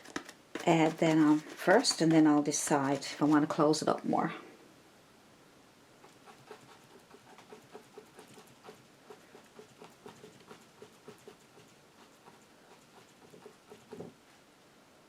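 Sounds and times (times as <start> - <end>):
brush tapping paint onto canvas: 0.1 - 3.6.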